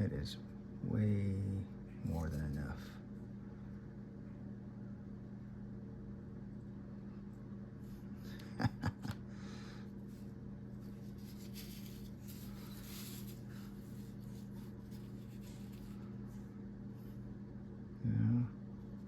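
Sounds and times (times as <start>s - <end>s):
steady low hum: 0.0s - 19.0s
scraping and rustling on workbench: 10.8s - 16.4s.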